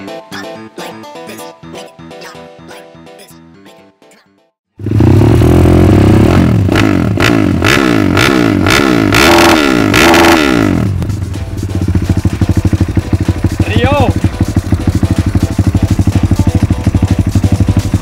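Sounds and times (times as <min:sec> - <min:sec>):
motorcycle engine revving: 0:04.8 - 0:18.0.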